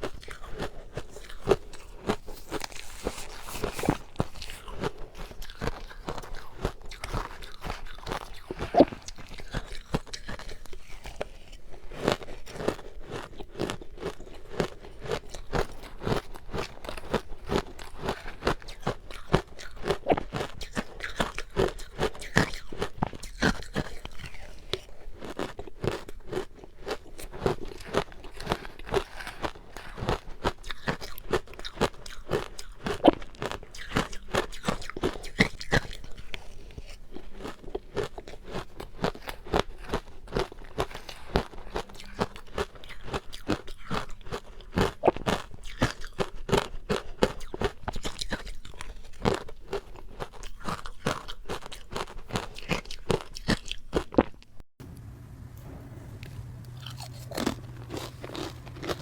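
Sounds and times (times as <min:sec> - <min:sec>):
crunching and chewing ice: 0:00.0 - 0:54.6, 0:56.8 - 0:59.0.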